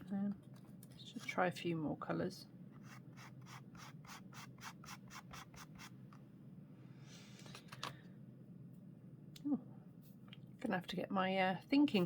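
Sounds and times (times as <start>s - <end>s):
pastel stick rubbing on paper: 2.8s - 6.0s.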